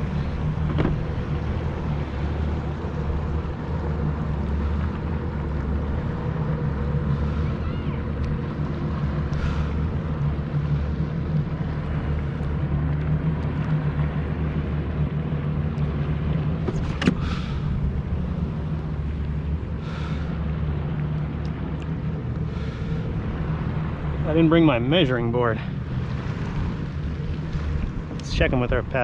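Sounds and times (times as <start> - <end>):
low motor drone: 0.0 - 29.0.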